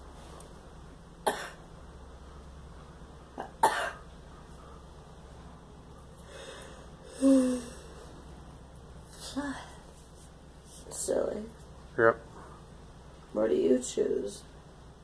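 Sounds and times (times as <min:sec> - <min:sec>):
girl coughing: 0:01.3 - 0:01.6, 0:03.4 - 0:04.0.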